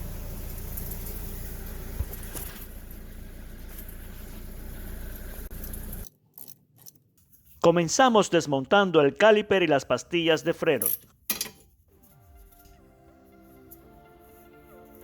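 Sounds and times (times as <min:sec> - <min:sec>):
running engine: 0:00.0 - 0:06.1
wheel bearing noise: 0:00.0 - 0:06.8.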